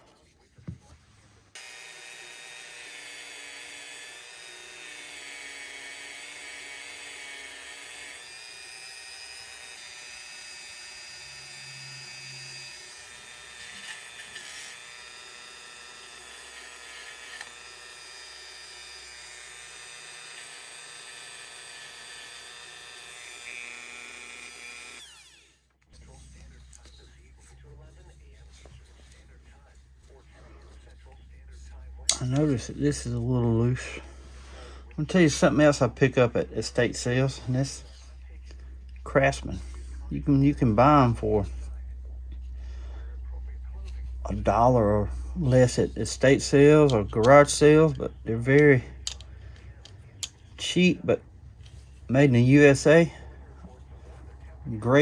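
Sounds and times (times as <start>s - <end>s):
wire brush grinding steel: 1.5s - 29.3s, 35.2s - 41.9s.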